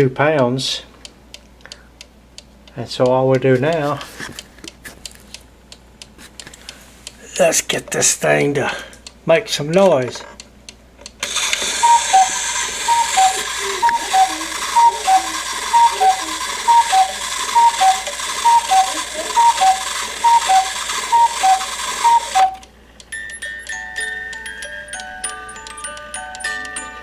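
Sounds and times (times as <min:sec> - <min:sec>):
cuckoo clock calling: 0:11.2 - 0:22.8
music-box tune: 0:11.2 - 0:27.0.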